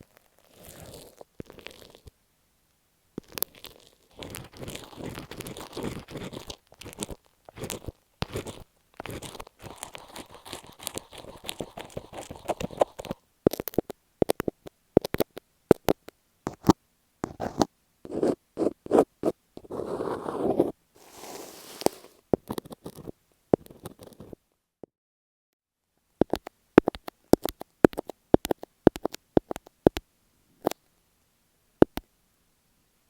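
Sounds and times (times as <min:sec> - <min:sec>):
tape scratched on microphone: 0:04.1 - 0:13.9, 0:16.5 - 0:24.4.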